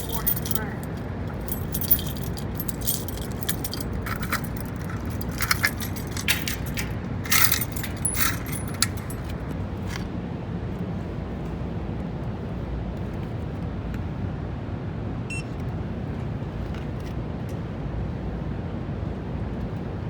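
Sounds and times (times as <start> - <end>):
metallic jingling and clinking: 0.0 - 10.0.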